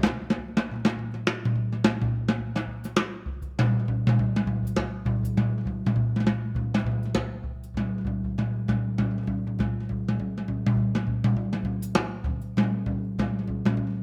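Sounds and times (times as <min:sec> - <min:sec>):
music with steady drum beat: 0:00.0 - 0:14.0.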